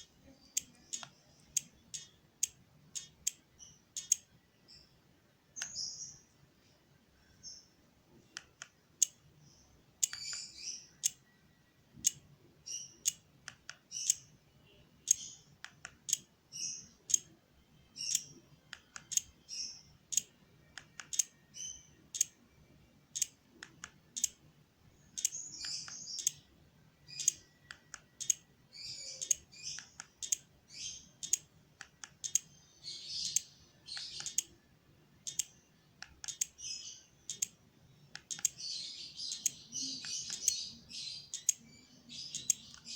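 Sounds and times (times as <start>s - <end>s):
small bird chirping: 0.0s - 6.4s, 7.2s - 22.5s, 23.1s - 42.9s
sharp clicks and taps: 0.6s - 4.3s, 8.3s - 9.2s, 10.0s - 10.4s, 13.0s - 14.2s, 18.1s - 19.3s, 20.1s - 21.3s, 23.2s - 24.4s, 27.2s - 28.4s, 29.2s - 30.5s, 31.2s - 32.5s, 34.0s - 34.5s, 35.2s - 36.6s, 37.3s - 38.6s.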